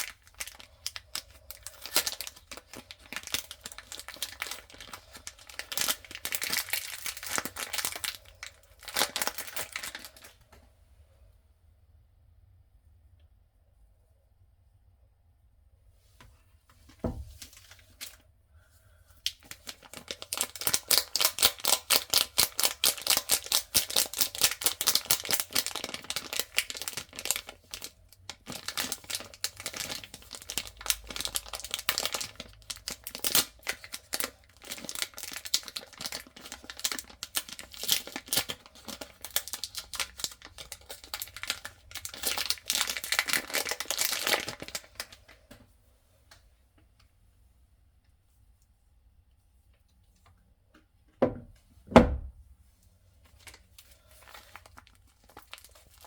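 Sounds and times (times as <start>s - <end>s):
wrappers crinkling and tearing: 0.0s - 10.4s, 17.3s - 18.2s, 19.2s - 45.5s, 53.2s - 56.0s.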